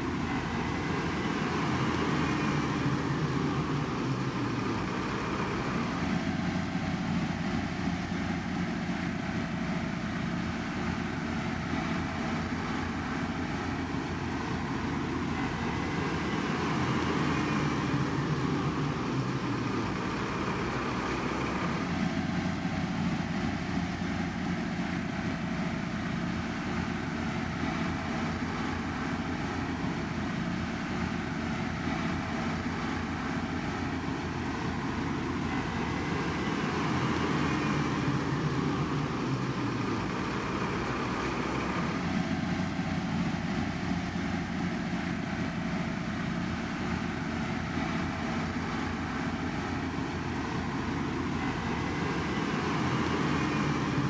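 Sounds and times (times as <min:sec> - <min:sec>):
heavy machinery diesel engines: 0:00.0 - 0:54.0.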